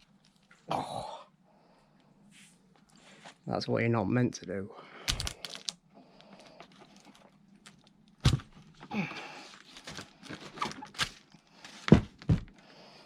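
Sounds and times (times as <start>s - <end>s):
magnets knocking and scraping: 5.1s - 8.9s.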